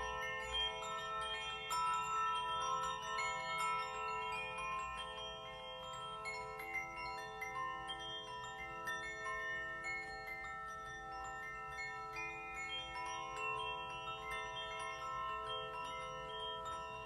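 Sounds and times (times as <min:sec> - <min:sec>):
metal bells and chimes ringing: 0:00.0 - 0:17.0.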